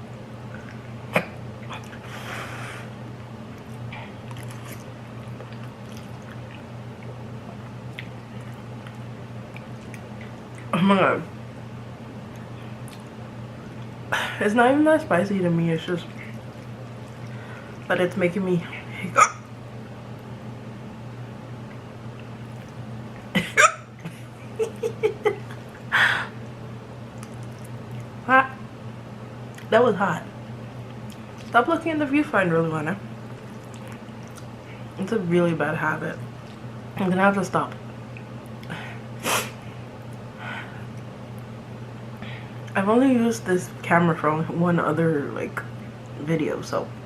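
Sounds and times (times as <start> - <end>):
steady low hum: 0.0 - 47.0
woman hiccuping: 1.1 - 1.4, 19.1 - 19.4, 23.4 - 24.1
person chewing noodles: 4.2 - 10.7, 33.3 - 34.6
wet mouth clicks and smacks: 12.3 - 13.1, 27.2 - 28.1, 33.3 - 34.5.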